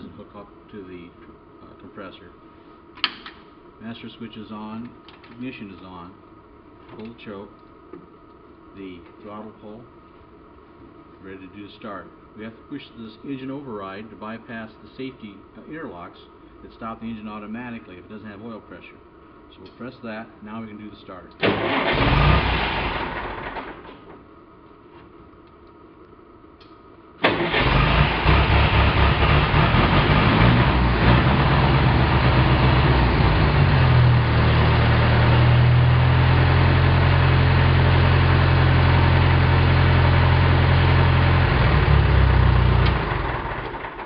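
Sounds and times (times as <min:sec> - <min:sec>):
gas engine running: 0:27.2 - 0:44.0.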